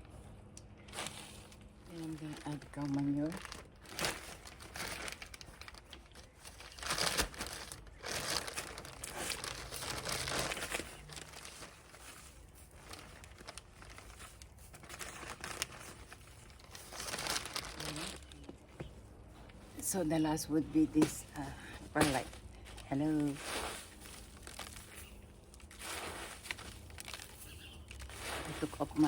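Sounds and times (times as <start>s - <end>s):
plastic bag rustling: 0.7s - 18.8s, 19.4s - 29.0s.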